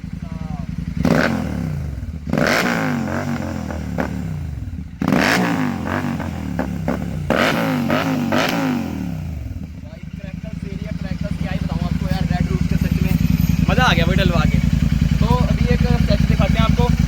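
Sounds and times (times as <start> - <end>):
motorcycle engine revving: 0.0 - 17.0
exhaust popping and crackling: 5.0 - 17.0.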